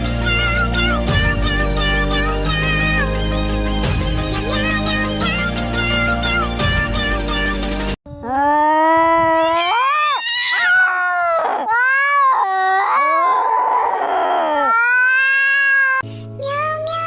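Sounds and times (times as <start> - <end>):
music: 0.0 - 8.0, 16.0 - 17.0
cat meowing and yowling: 8.3 - 16.0.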